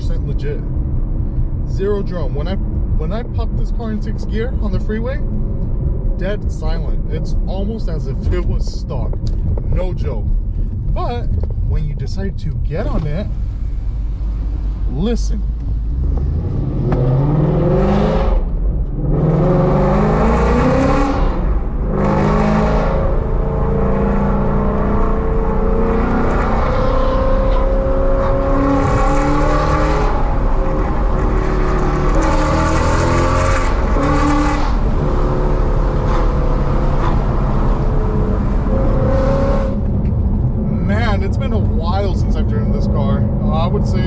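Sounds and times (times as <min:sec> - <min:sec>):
car engine accelerating hard: 0:12.7 - 0:44.0.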